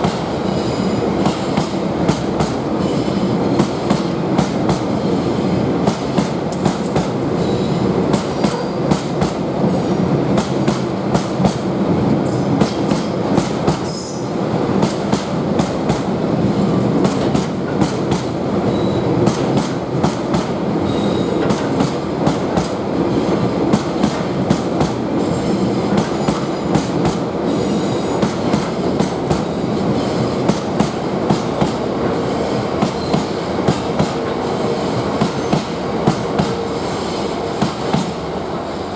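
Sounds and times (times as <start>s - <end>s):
train wheels clicking on rail joints: 0.0s - 9.5s, 10.3s - 38.2s
train rumble: 0.0s - 38.9s.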